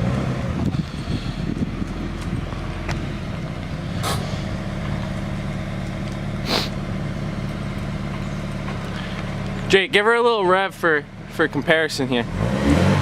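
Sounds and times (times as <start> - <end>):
car engine idling: 0.0 - 12.3
brief hisses: 6.4 - 6.8.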